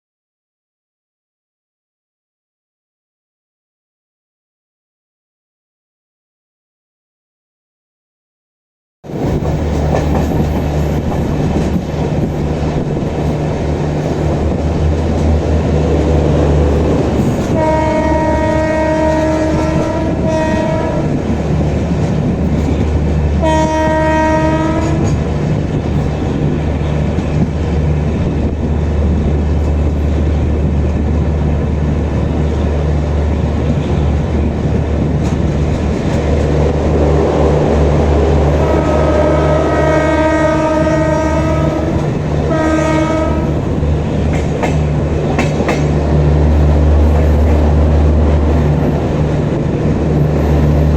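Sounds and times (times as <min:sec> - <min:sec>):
train wheel and rail noise: 0:09.0 - 0:50.9
locomotive horn blasts: 0:17.5 - 0:21.2, 0:23.4 - 0:25.2, 0:38.5 - 0:43.6.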